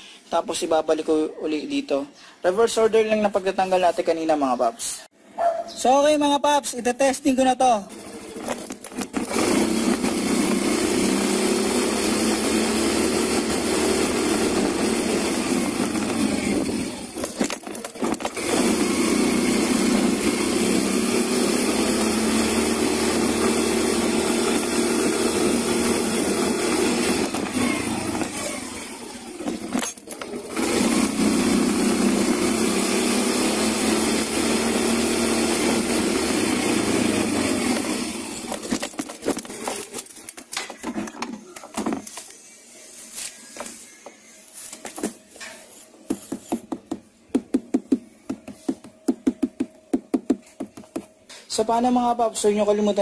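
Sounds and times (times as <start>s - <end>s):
scooter engine revving: 7.9s - 40.0s.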